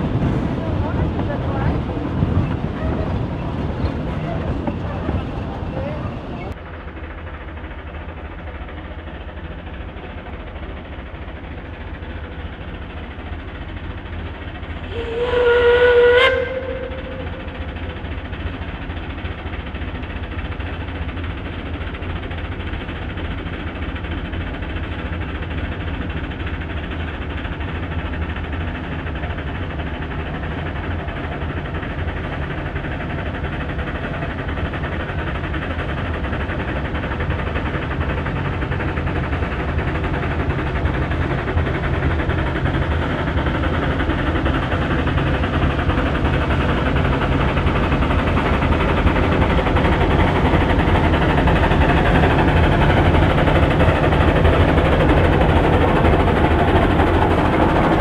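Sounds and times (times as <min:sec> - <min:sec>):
steam train running rumble: 0:00.0 - 0:58.0
steam locomotive whistle: 0:14.9 - 0:17.4.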